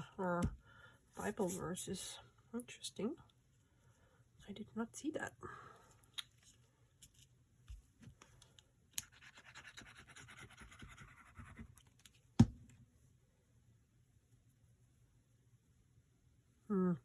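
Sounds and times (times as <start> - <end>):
scratchy rubbing on paper: 9.0 - 11.8.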